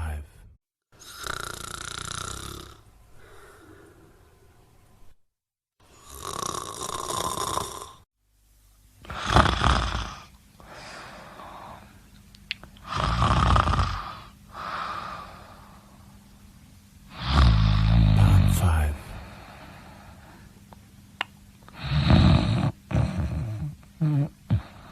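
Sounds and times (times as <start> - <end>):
person snoring: 1.0 - 4.3, 5.9 - 8.1, 9.0 - 11.9, 12.8 - 15.8, 17.1 - 20.4, 21.7 - 24.9.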